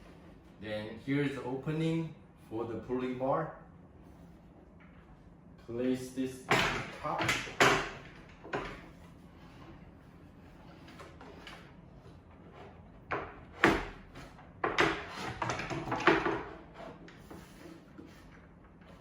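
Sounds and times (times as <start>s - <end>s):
wooden boards knocking: 14.6s - 16.6s.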